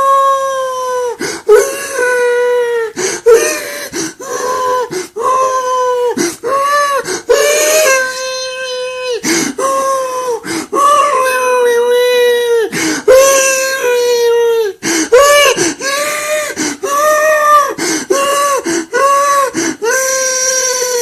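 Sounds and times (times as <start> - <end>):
man wailing cries: 0.0 - 21.0
catches of breath: 3.0 - 4.3, 17.8 - 18.9.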